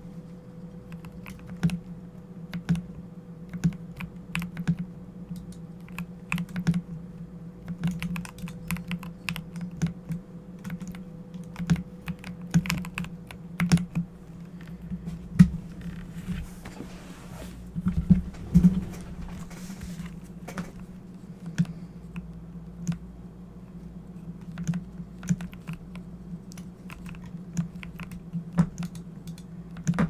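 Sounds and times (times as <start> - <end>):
steady low hum: 0.0 - 30.0
keyboard keystroke clicks: 0.9 - 1.9, 2.5 - 6.9, 7.6 - 14.1, 24.4 - 30.0.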